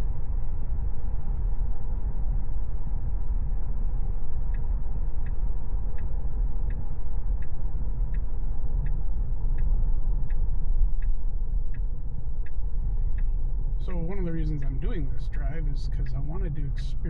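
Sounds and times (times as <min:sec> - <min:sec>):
road rumble: 0:00.0 - 0:17.0
turn signal ticking: 0:03.4 - 0:17.0.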